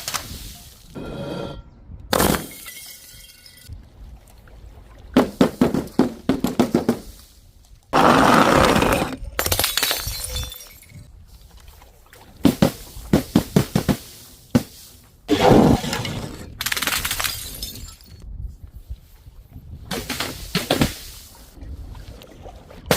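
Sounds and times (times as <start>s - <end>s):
glass bottles shattering: 2.2s - 3.7s, 9.4s - 11.1s, 16.9s - 18.2s.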